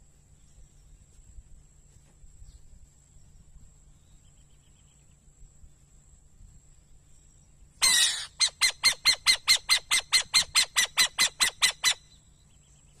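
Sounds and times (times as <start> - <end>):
owl screech: 7.8 - 12.0
owl calling sharp notes: 7.8 - 12.2.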